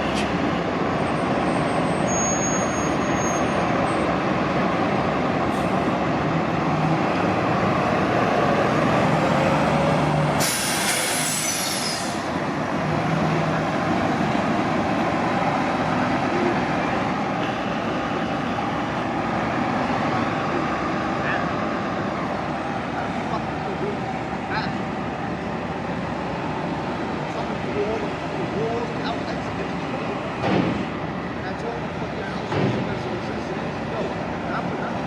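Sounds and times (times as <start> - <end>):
bus engine hum: 0.0 - 35.0
air brake hiss: 10.4 - 12.3.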